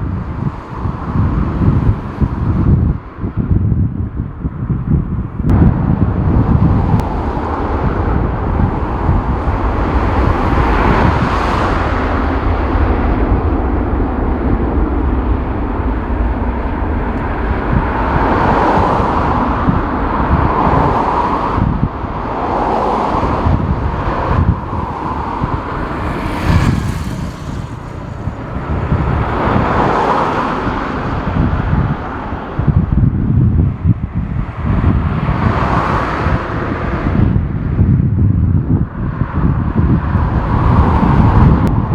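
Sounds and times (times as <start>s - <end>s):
gusty wind buffeting microphone: 0.0s - 41.9s.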